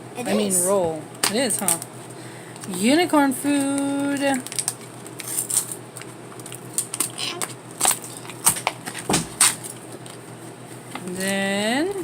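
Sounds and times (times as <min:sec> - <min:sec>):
packaging crinkling: 0:03.6 - 0:10.2
wrapping crackles: 0:03.6 - 0:10.2.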